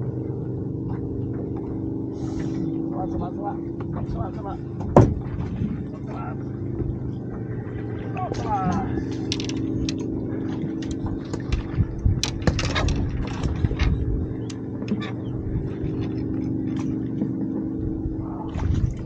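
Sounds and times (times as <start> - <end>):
steady low hum: 0.0 - 19.0
fishing gear clicks and taps: 8.2 - 10.1, 10.8 - 15.1.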